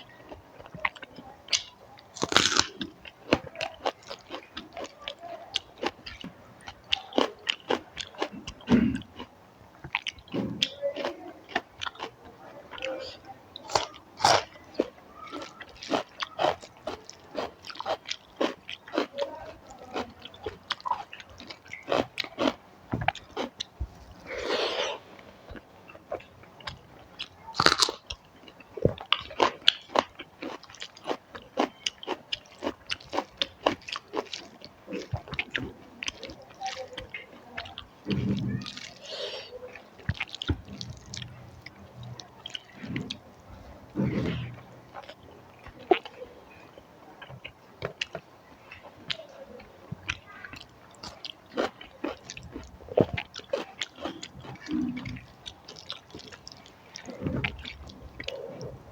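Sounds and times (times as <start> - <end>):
close chewing with mouth clicks: 0.0 - 58.9
crunchy bites: 1.6 - 4.6, 27.6 - 28.0.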